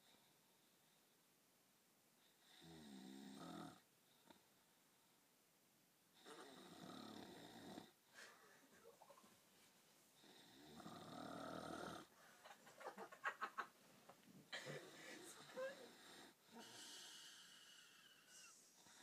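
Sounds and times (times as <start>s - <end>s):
person snoring: 6.2s - 7.9s, 10.2s - 12.1s, 14.8s - 19.0s.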